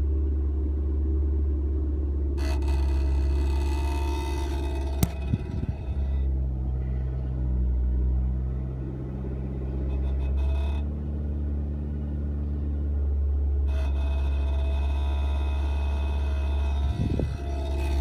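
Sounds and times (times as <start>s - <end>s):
quick knocks: 5.0s - 5.3s
sharp click: 5.0s - 5.3s.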